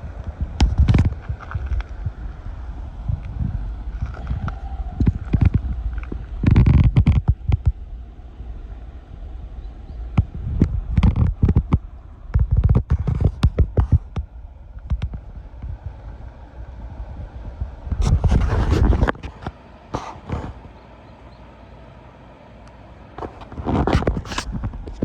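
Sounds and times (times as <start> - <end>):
low rumble: 0.0 - 25.0
scraping rustle: 0.6 - 7.8, 10.2 - 14.2, 17.8 - 20.8, 23.2 - 25.0.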